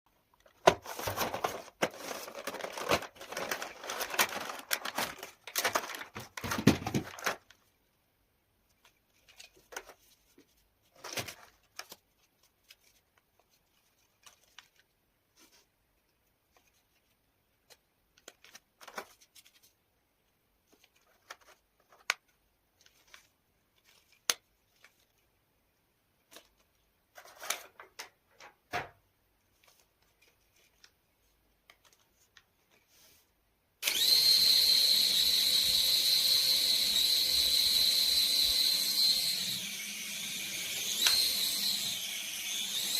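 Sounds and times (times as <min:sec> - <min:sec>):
packaging torn and crinkled: 0:00.8 - 0:07.6
rustles of handling: 0:08.6 - 0:25.4, 0:29.4 - 0:33.4.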